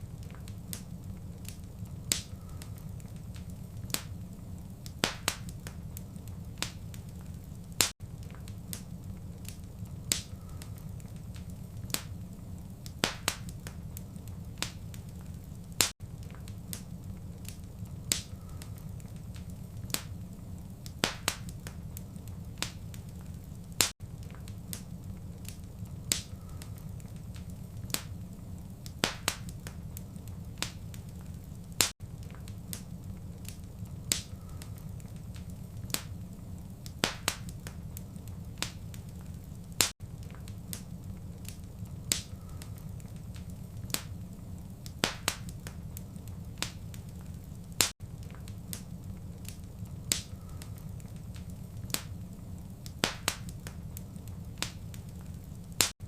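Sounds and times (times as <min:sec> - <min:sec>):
steady low rumble: 0:00.0 - 0:55.8
fireplace fire crackling: 0:00.0 - 0:56.0
sharp pops: 0:44.9 - 0:45.8, 0:52.9 - 0:53.8.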